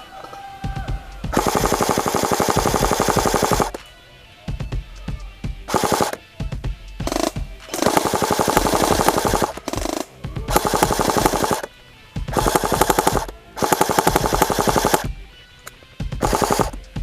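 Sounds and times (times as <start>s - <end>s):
airsoft rifle automatic fire: 1.3s - 3.8s, 5.7s - 6.2s, 7.1s - 11.7s, 12.3s - 15.1s, 16.2s - 16.8s.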